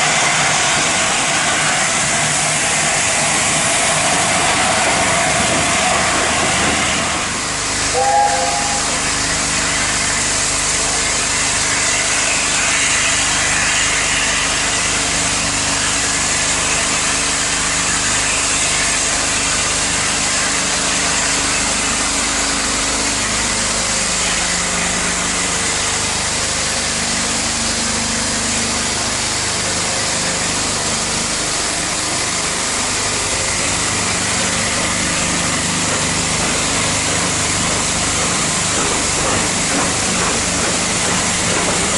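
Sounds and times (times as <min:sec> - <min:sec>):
steam train running and hissing: 0:00.0 - 0:41.9
brief higher tone: 0:08.0 - 0:09.2.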